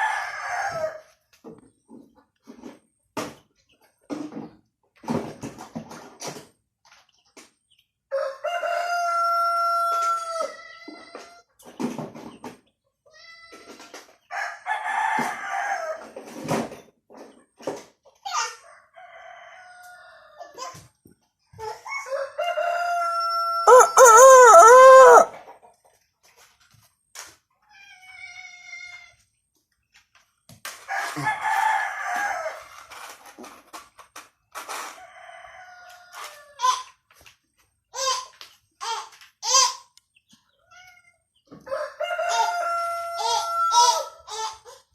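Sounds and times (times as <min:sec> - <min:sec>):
young rooster crowing: 0:00.0 - 0:01.0, 0:08.1 - 0:10.6, 0:14.3 - 0:16.1, 0:18.8 - 0:20.4, 0:21.8 - 0:25.4, 0:30.9 - 0:32.6, 0:35.1 - 0:36.6, 0:41.6 - 0:44.2
rooster crowing: 0:08.1 - 0:10.5, 0:21.9 - 0:25.3, 0:41.7 - 0:44.1.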